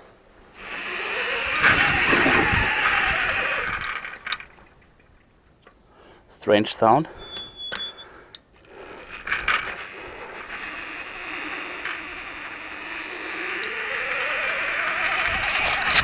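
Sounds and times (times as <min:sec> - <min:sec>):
electric bike motor whine: 0:00.5 - 0:04.8, 0:08.7 - 0:16.0
metallic scraping drivetrain noise: 0:00.5 - 0:05.3, 0:08.6 - 0:16.0
drivetrain clicks: 0:00.6 - 0:05.8, 0:08.3 - 0:16.0.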